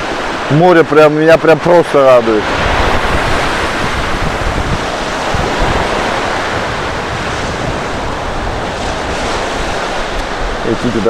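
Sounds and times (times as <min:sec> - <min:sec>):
storm surf breaking on shore: 0:00.0 - 0:11.0
wind buffeting microphone: 0:01.5 - 0:11.0.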